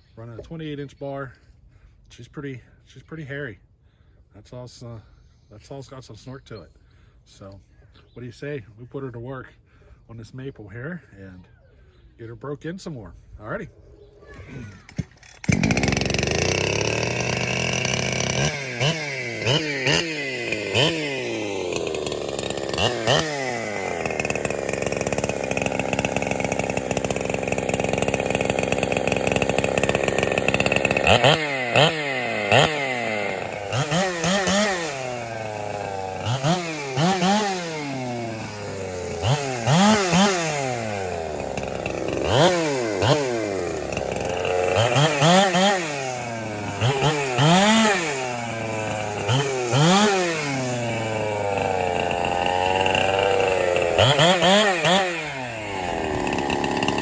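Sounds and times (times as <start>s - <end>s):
chainsaw revving: 14.2s - 57.0s.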